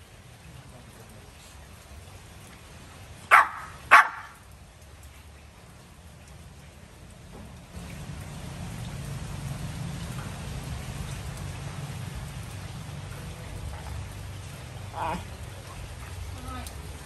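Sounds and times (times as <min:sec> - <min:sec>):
steady rain: 0:00.0 - 0:17.0
dog bark: 0:03.3 - 0:04.4.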